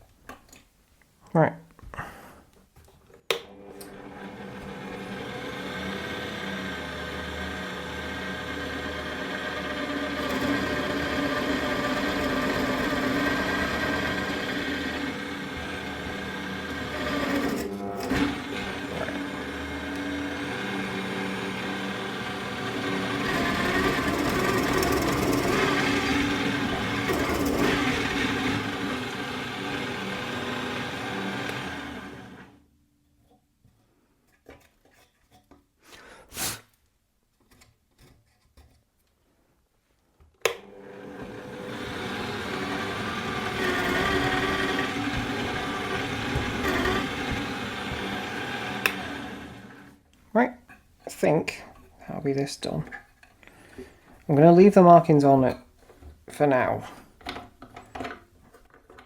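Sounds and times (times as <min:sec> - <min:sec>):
drill motor humming: 0:03.8 - 0:32.6, 0:40.7 - 0:50.0.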